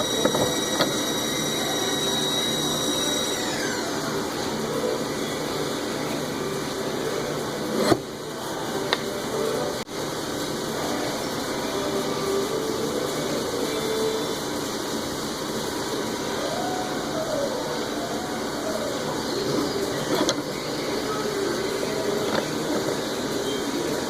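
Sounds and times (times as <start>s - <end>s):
faint wavering tone: 0.0s - 3.9s
machine running steadily: 0.0s - 24.0s.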